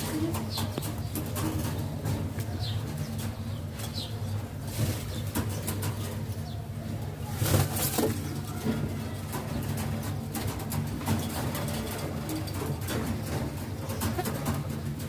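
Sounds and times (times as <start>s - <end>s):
pigeons cooing: 0.0s - 15.0s
pigeon wing flaps: 7.4s - 8.8s.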